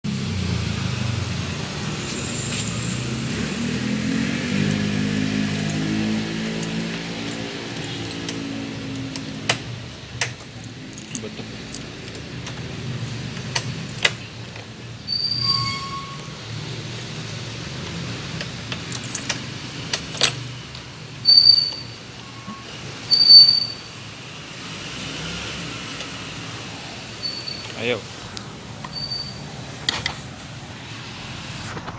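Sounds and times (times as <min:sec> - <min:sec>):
scooter engine running unevenly: 0:00.1 - 0:15.2
short high squeaks: 0:02.1 - 0:03.4, 0:15.1 - 0:16.5, 0:21.2 - 0:24.0, 0:27.2 - 0:28.0, 0:28.8 - 0:30.2.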